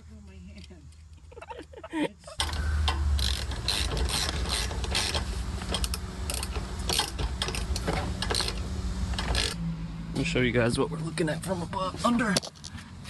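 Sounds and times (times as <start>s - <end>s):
hand ratchet clicking: 2.4s - 9.6s.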